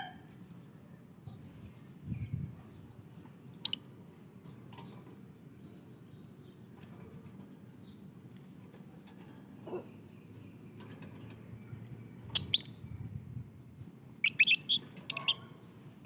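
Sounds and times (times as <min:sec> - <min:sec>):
lovebirds chirping: 0:14.2 - 0:15.4.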